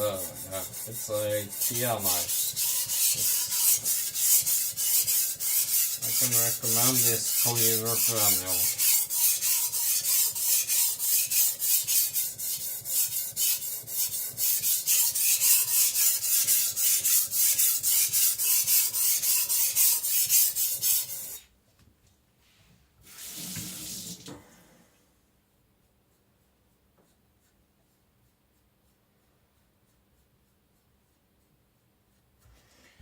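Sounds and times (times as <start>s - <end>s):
blade scraping on a whetstone: 0.0s - 21.4s.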